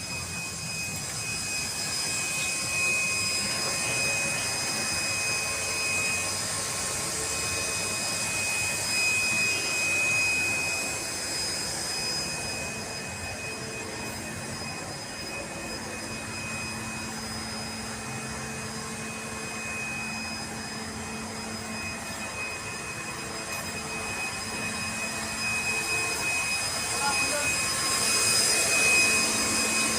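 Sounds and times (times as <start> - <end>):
motor whining and hissing: 0.0 - 29.9.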